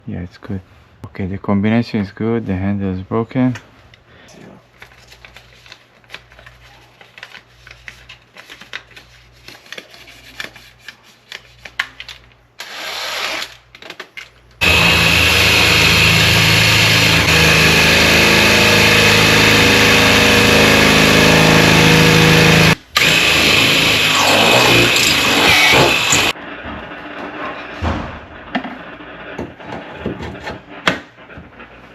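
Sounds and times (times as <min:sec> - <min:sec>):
power drill drilling into metal: 0:14.6 - 0:26.4.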